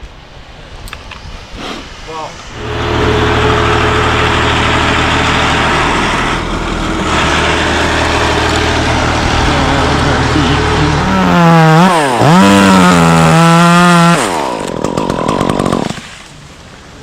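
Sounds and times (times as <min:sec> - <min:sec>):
chainsaw engine revving: 0:02.6 - 0:16.2.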